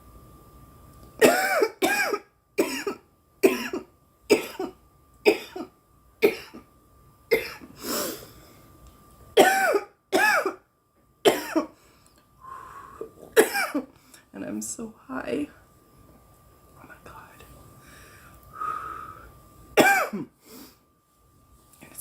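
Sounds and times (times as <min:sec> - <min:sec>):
woman coughing: 0:01.2 - 0:06.6, 0:07.3 - 0:07.7, 0:09.4 - 0:10.6, 0:11.3 - 0:11.8, 0:13.4 - 0:13.9, 0:19.8 - 0:20.3.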